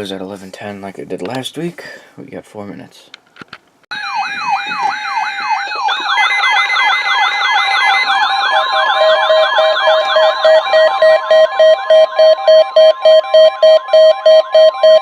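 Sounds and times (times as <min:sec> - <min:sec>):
alert siren wails: 0:03.9 - 0:15.0
steady alarm tones: 0:03.9 - 0:15.0
rapid pulsing beep: 0:05.9 - 0:15.0.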